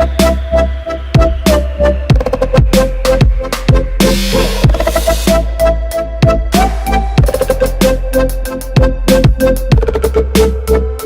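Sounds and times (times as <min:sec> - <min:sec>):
kick drum beat: 0:01.2 - 0:01.4, 0:02.1 - 0:05.0, 0:06.2 - 0:06.6, 0:07.2 - 0:07.5, 0:08.8 - 0:10.0.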